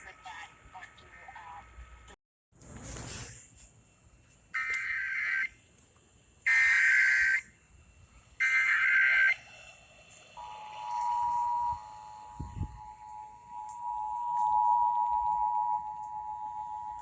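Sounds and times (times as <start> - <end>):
data tone bursts: 10.4 - 17.0
two-tone attention signal: 10.4 - 17.0.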